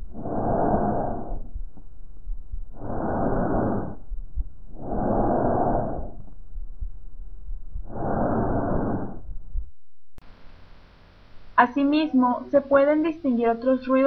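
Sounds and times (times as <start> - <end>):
breathing through stethoscope: 0.0 - 1.9, 2.7 - 6.4, 7.8 - 9.4.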